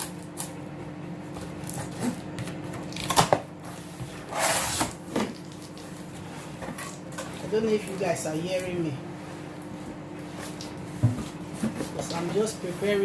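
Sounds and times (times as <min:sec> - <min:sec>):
steady low hum: 0:00.0 - 0:13.0
packaging rustling and scraping: 0:01.4 - 0:07.0.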